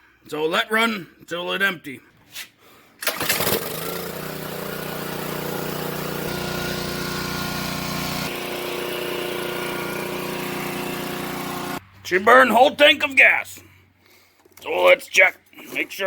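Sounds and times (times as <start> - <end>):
small engine running: 3.1 - 11.8.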